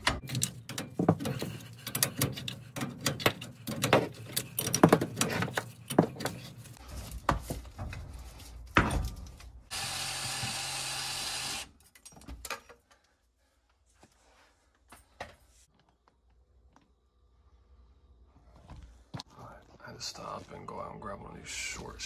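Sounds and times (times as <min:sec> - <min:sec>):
knocks and clicks of tools: 0:00.0 - 0:06.6
small power tool running: 0:09.7 - 0:11.7.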